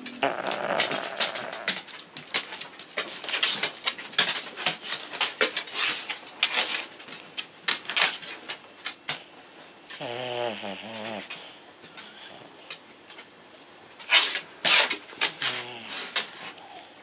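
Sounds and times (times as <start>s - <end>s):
dog snoring: 0.0s - 1.8s, 9.9s - 12.7s, 15.3s - 17.0s
dog snorting: 0.0s - 2.0s, 9.1s - 12.8s, 14.1s - 17.0s.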